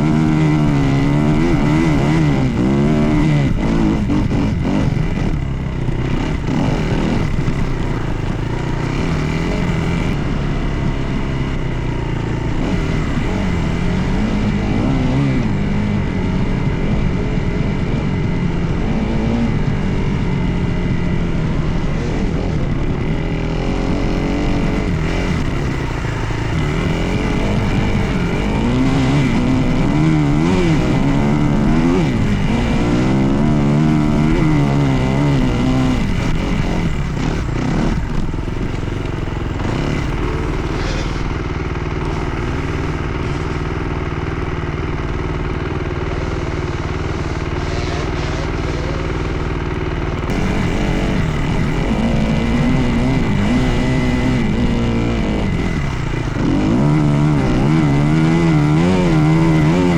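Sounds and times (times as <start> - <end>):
dirt bike engine revving: 0.0 - 59.9.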